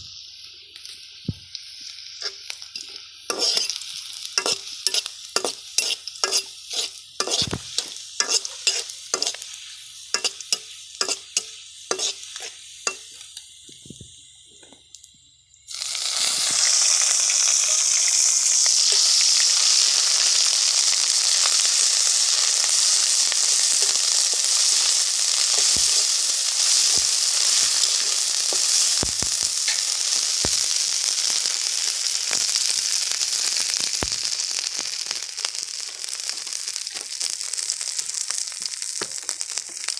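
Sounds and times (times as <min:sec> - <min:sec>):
food sizzling in hot oil: 0:00.0 - 0:39.9
utensil scraping in a pan: 0:02.2 - 0:03.8, 0:04.4 - 0:13.1, 0:22.4 - 0:29.9.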